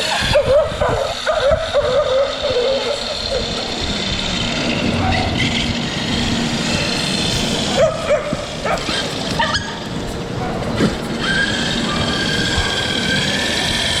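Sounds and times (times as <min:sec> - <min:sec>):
dog whining: 0:00.0 - 0:03.7, 0:07.8 - 0:13.9
dog yelping: 0:00.0 - 0:03.8, 0:07.7 - 0:14.0
electric motor whine: 0:00.0 - 0:14.0
wind noise: 0:00.0 - 0:14.0.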